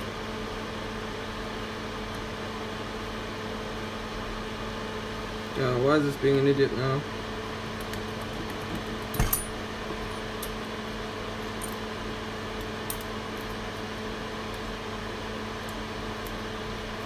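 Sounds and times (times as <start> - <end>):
fan hum: 0.0 - 17.0
metallic tool clink: 9.2 - 10.2.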